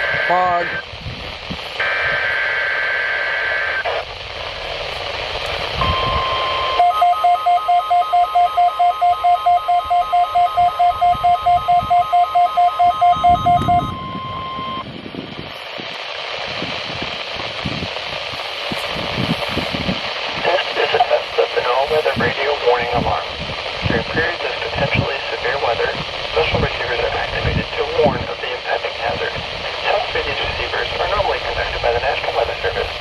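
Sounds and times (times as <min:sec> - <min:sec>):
radio hiss: 0:00.0 - 0:07.0, 0:13.6 - 0:33.0
steady alarm tone: 0:04.6 - 0:14.9
rapid beeps: 0:05.8 - 0:14.9.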